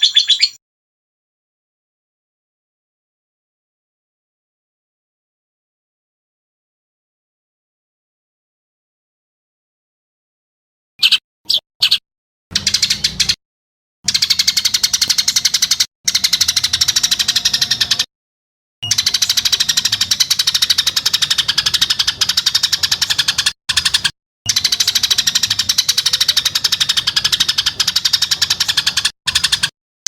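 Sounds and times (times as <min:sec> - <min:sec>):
songbird rattling trills: 0:00.0 - 0:00.6, 0:11.0 - 0:13.4, 0:14.1 - 0:18.1, 0:18.8 - 0:29.7.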